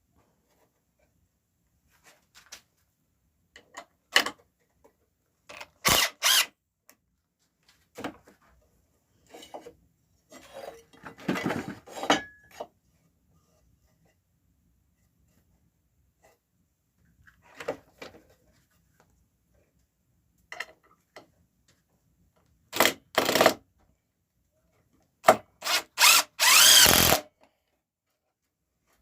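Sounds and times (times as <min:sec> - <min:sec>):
loud tool bursts: 0:05.8 - 0:06.5, 0:25.6 - 0:27.2.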